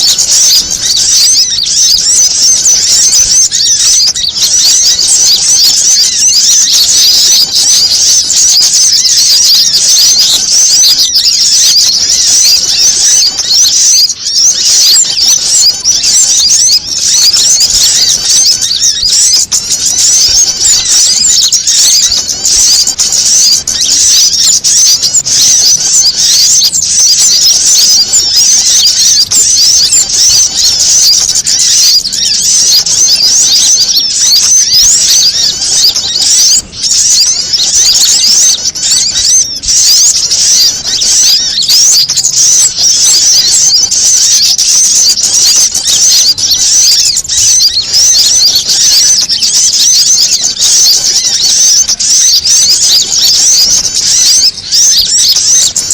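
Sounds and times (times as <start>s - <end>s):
chorus of small birds chirping: 0.0s - 55.9s.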